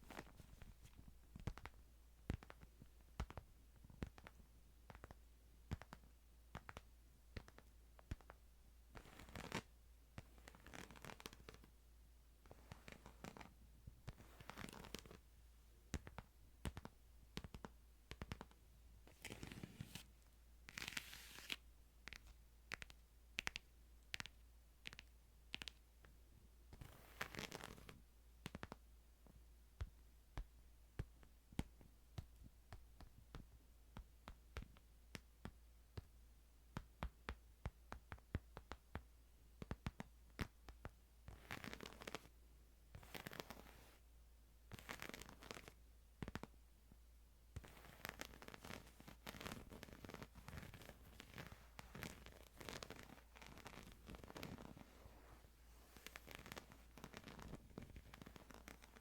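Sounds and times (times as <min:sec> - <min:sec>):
paper rustling: 0:20.8 - 0:21.6
light taps and scratches on book: 0:43.0 - 0:44.0.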